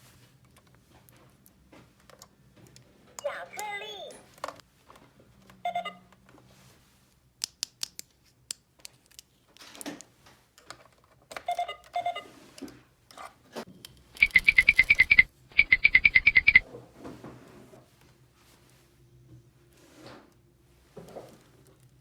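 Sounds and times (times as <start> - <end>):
electronic toy pulsing beep: 5.7 - 6.0, 11.5 - 12.3, 14.2 - 16.6
plastic toy pieces clicking: 7.4 - 9.8, 13.8 - 16.6
short chirps: 14.2 - 16.6.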